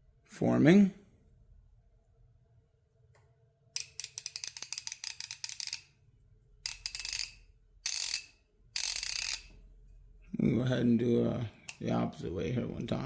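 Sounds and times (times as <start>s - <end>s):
ratchet clicking rapidly: 3.8s - 5.9s, 6.6s - 9.5s.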